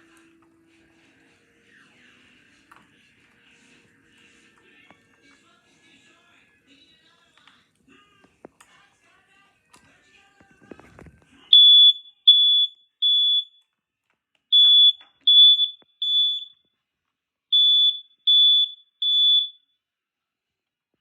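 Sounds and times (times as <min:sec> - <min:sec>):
smoke alarm beeping: 0:11.5 - 0:13.6, 0:14.5 - 0:16.7, 0:17.5 - 0:19.7.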